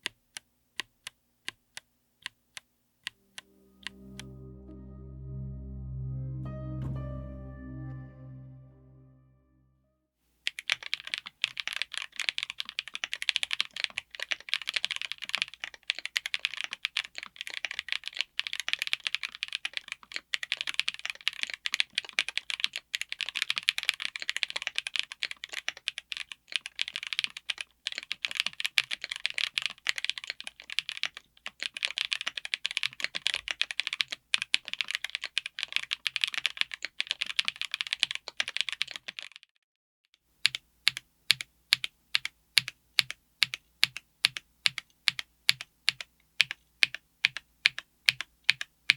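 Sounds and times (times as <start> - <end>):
fast typing on mechanical keyboard: 10.5 - 39.5, 40.4 - 48.9.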